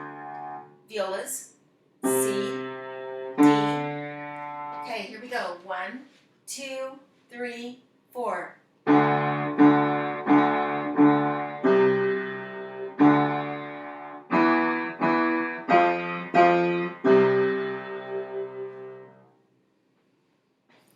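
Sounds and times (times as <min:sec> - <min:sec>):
slow piano melody: 0:00.0 - 0:00.9, 0:02.0 - 0:04.9, 0:08.9 - 0:19.3.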